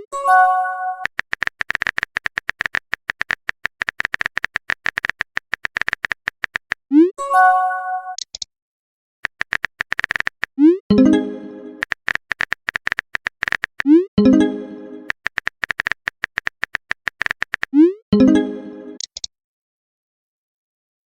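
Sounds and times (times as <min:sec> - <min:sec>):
phone keyboard taps: 0:01.0 - 0:06.8, 0:09.2 - 0:10.5, 0:11.8 - 0:13.9, 0:15.1 - 0:17.7
message chime: 0:10.9 - 0:11.8.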